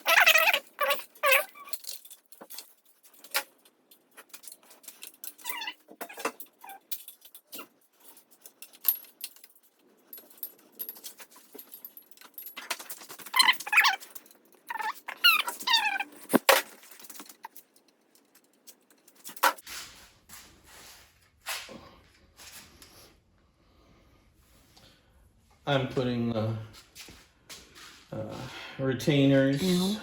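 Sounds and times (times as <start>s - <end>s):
dog whining: 0.0s - 1.9s, 14.7s - 16.2s.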